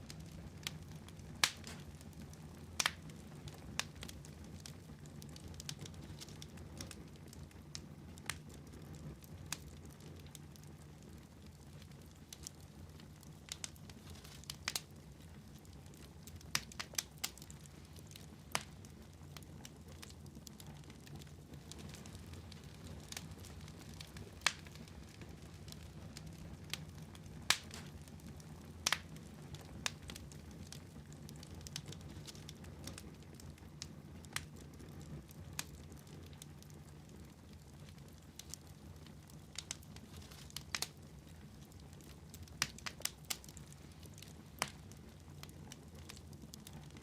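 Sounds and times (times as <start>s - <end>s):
wood fire crackling: 0.0s - 47.0s.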